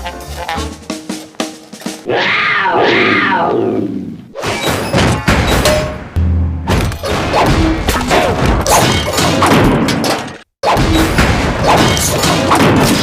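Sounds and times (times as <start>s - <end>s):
cartoon thuds crashes and whacks: 4.4s - 6.1s, 6.7s - 13.0s.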